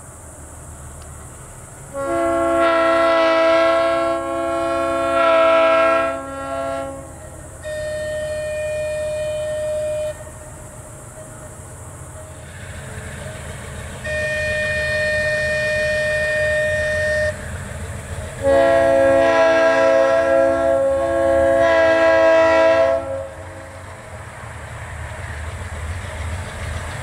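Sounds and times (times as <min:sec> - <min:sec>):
horn blowing: 0:01.9 - 0:10.4, 0:14.0 - 0:17.5, 0:18.4 - 0:23.6.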